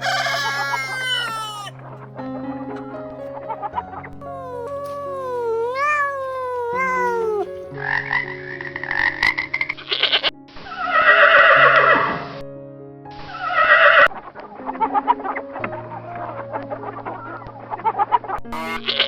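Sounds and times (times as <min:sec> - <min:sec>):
farm animal calls: 0:00.0 - 0:01.8, 0:05.7 - 0:07.6
background music: 0:00.0 - 0:19.0.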